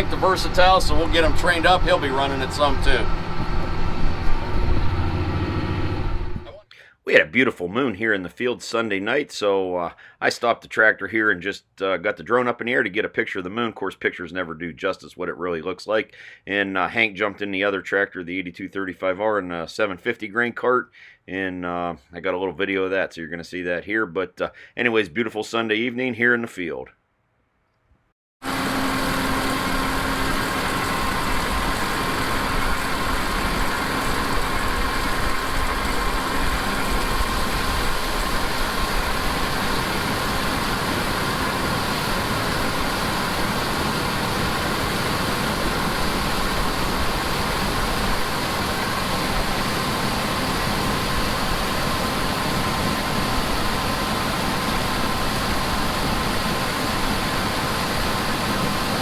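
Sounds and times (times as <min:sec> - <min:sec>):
tractor engine droning: 0:00.0 - 0:06.6, 0:28.4 - 0:59.0.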